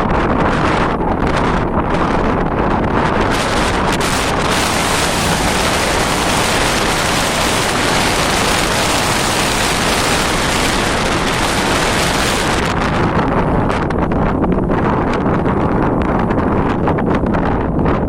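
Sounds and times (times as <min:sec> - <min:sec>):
strong wind buffeting microphone: 0:00.0 - 0:18.0.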